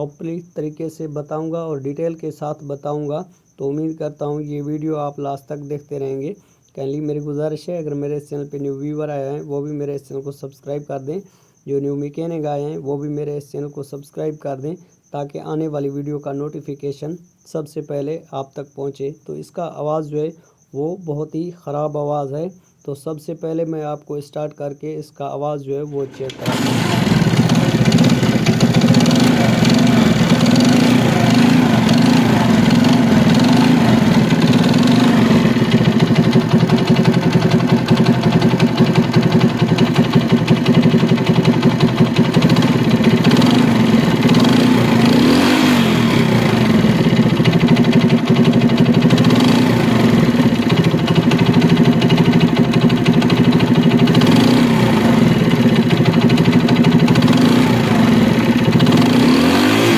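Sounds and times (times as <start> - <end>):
motorcycle engine clattering: 25.9 - 59.9.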